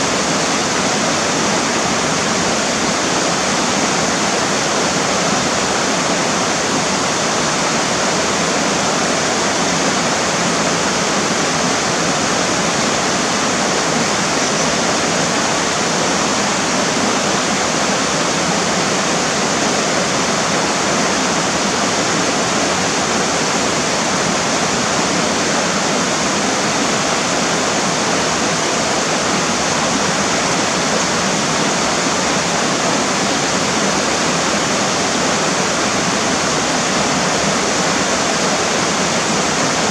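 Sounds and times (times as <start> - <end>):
water rushing over rocks: 0.0 - 39.9.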